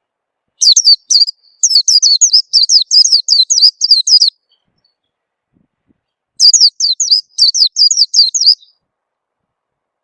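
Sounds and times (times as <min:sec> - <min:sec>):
bird singing high chirps: 0:00.6 - 0:05.2, 0:06.1 - 0:08.8.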